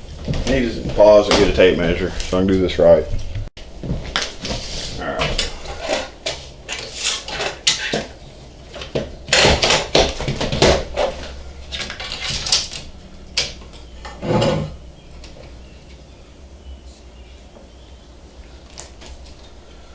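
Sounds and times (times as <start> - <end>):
tools clattering on workbench: 5.3 - 14.8.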